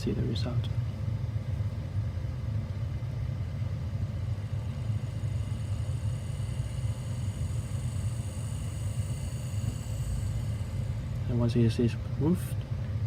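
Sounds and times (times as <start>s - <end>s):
faint high whine: 3.1s - 13.0s
small motor humming: 3.8s - 11.5s.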